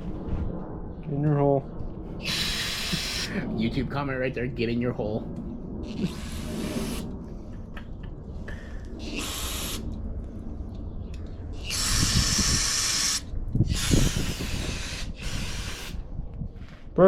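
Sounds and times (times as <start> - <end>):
aerosol spray can hissing: 2.2 - 3.3, 11.7 - 16.0.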